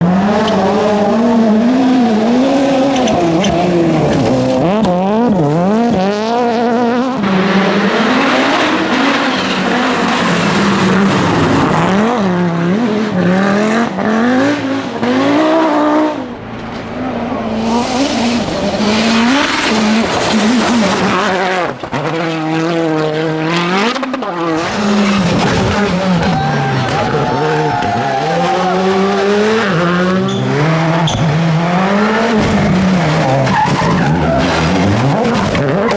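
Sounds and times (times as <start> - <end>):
rally car engines revving: 0.0 - 35.9
tyre noise: 15.0 - 23.2.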